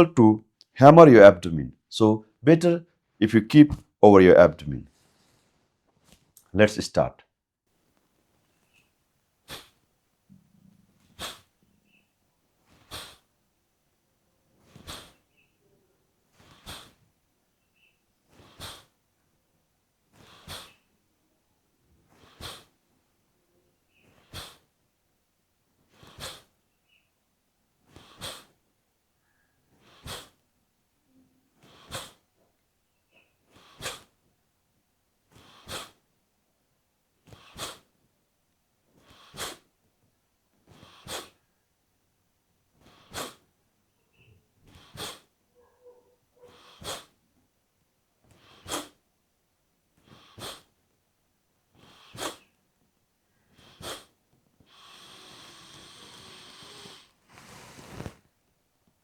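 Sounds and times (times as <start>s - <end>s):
quiet inhalations: 4.9s - 6.3s, 8.4s - 13.4s, 14.5s - 19.0s, 20.1s - 21.0s, 21.9s - 23.0s, 23.8s - 24.8s, 25.8s - 27.1s, 27.8s - 30.5s, 31.1s - 34.2s, 35.3s - 36.1s, 40.6s - 41.6s, 42.7s - 47.2s, 48.2s - 49.0s, 50.0s - 50.9s, 51.7s - 52.6s, 53.2s - 58.5s
forceful sharp exhalations: 9.5s - 9.8s, 11.2s - 11.5s, 12.7s - 13.3s, 14.6s - 15.3s, 16.4s - 17.0s, 18.3s - 18.9s, 20.2s - 20.8s, 22.1s - 22.7s, 24.0s - 24.7s, 25.9s - 26.5s, 27.9s - 28.6s, 29.8s - 30.4s, 31.6s - 32.2s, 33.5s - 34.1s, 35.3s - 36.0s, 37.3s - 37.9s, 39.1s - 39.6s, 40.7s - 41.4s, 44.7s - 45.3s, 46.4s - 47.1s, 48.3s - 49.0s, 50.0s - 50.7s, 51.8s - 52.5s, 53.5s - 54.1s, 54.7s - 58.3s.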